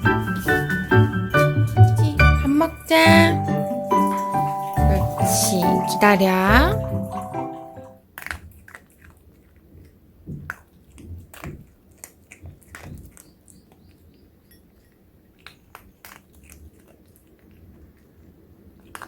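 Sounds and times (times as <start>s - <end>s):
dog chewing and crunching food: 8.0s - 19.0s.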